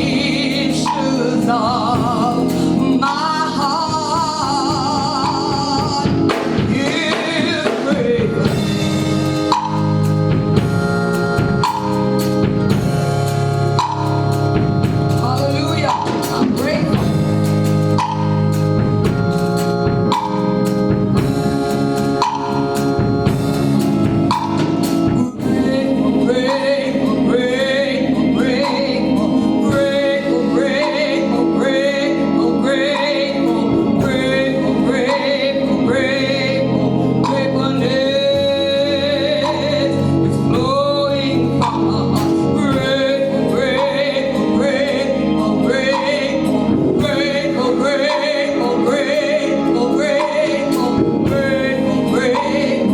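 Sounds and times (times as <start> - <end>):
gospel band with drums and keyboard: 0.0 - 52.9
singers singing: 0.0 - 52.9.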